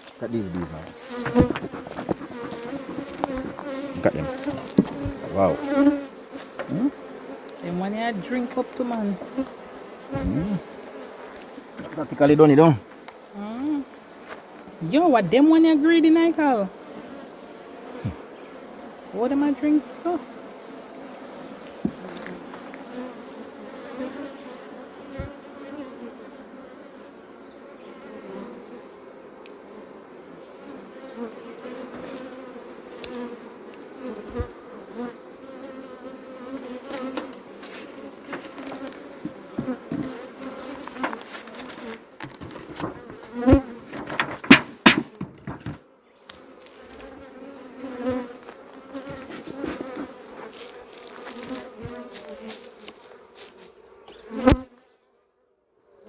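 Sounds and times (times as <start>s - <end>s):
bees buzzing: 0.0s - 55.1s
sharp knocks: 1.2s - 3.6s, 4.4s - 5.3s, 38.3s - 40.2s, 42.2s - 45.8s.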